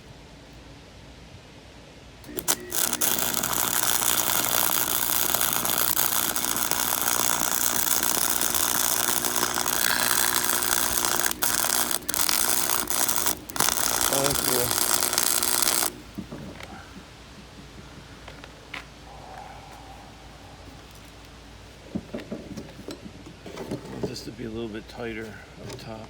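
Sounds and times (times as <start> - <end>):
faint steady hum: 0.0 - 23.4
welding arc crackling: 2.2 - 17.8.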